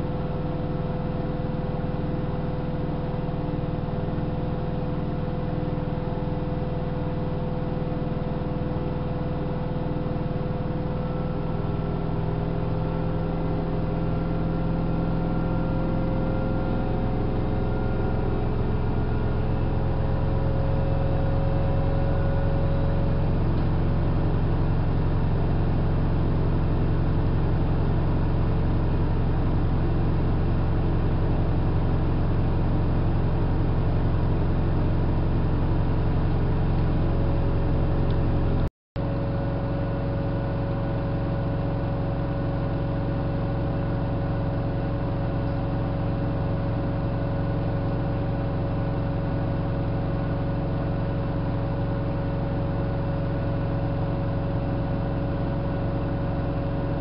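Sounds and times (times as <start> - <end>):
washing machine spinning: 16.6 - 38.5.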